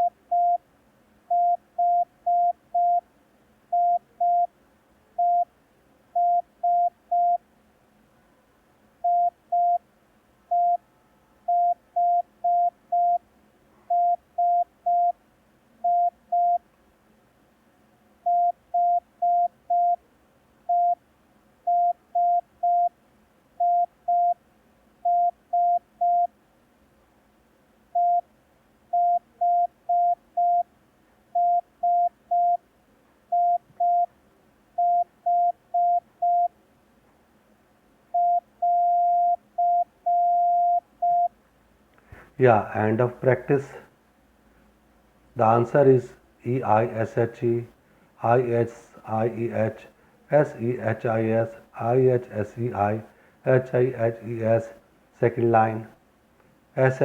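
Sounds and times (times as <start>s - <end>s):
morse code tones: 1.3s - 3.0s, 3.8s - 4.5s, 6.2s - 7.4s, 29.0s - 30.6s, 31.4s - 32.6s, 33.3s - 34.1s, 34.8s - 36.5s, 38.2s - 41.3s.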